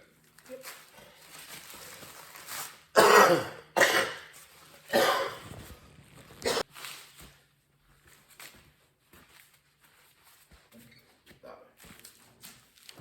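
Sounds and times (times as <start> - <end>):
person coughing: 3.0 - 4.3, 4.9 - 5.6, 6.4 - 6.6.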